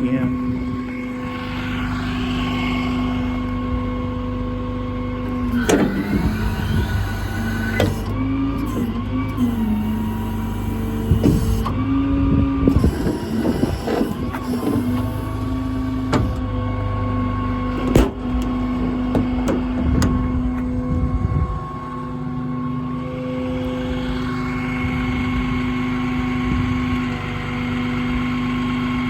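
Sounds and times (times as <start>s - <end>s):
hydraulic system and engine humming: 0.0s - 29.0s
sharp clunks: 17.8s - 18.5s.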